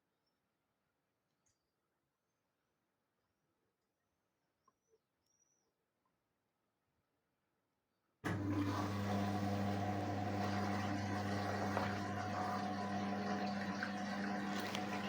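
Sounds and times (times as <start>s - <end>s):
water rushing in washing machine: 8.3s - 15.0s.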